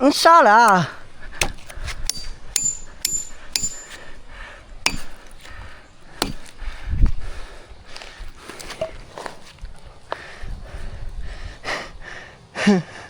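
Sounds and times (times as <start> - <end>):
sharp wooden knocks: 0.7 - 7.3.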